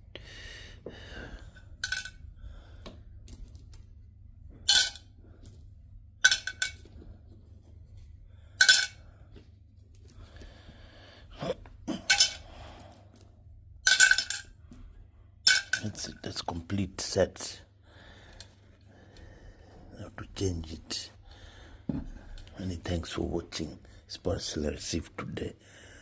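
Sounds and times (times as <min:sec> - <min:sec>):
small metal parts clinking: 0:01.8 - 0:02.2, 0:04.7 - 0:07.0, 0:08.6 - 0:09.0, 0:12.0 - 0:16.1.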